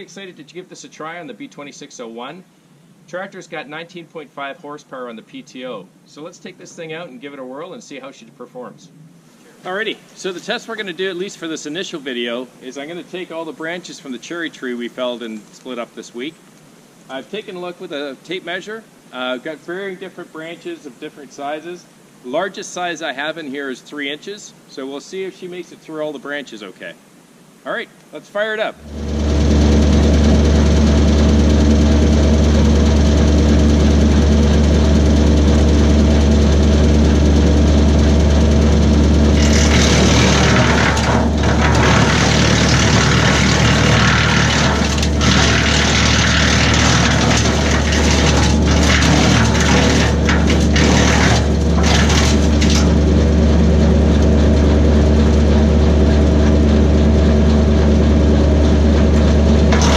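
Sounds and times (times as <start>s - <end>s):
tractor diesel engine running: 28.8s - 59.9s.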